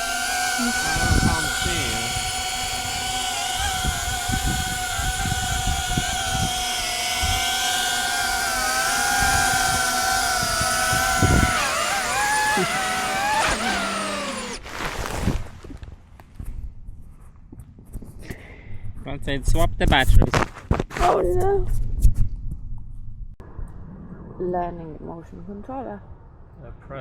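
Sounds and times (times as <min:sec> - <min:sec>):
drone propellers whining: 0:00.0 - 0:14.6.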